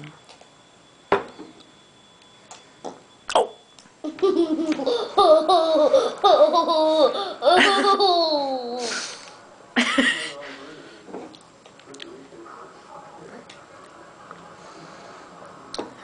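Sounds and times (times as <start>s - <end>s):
young child laughing: 4.0s - 9.0s.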